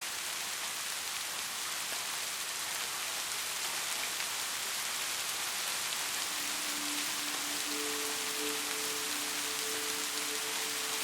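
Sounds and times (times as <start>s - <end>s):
steady rain hiss: 0.0s - 11.0s
raindrops ticking on a surface: 0.1s - 11.0s.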